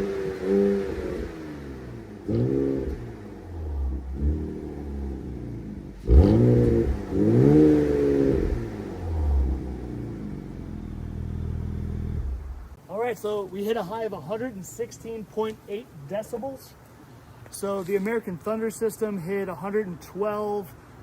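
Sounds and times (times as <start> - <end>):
engine revving through exhaust: 0.0 - 12.8.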